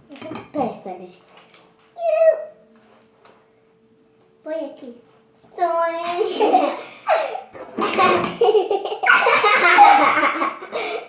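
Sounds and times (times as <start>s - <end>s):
people laughing hard: 6.3s - 11.0s.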